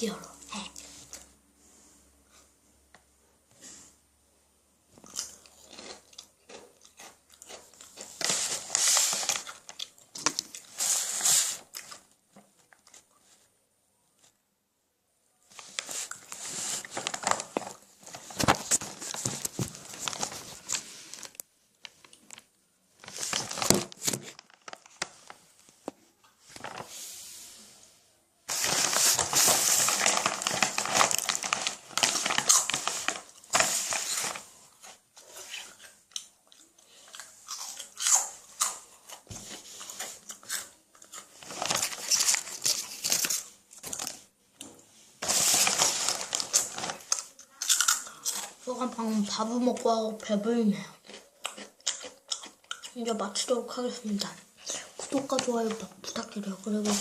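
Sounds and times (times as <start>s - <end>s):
plastic snack bag crinkling: 5.0s - 13.0s, 15.5s - 25.8s, 26.4s - 27.0s, 28.5s - 44.3s, 45.2s - 49.9s, 51.0s - 57.0s.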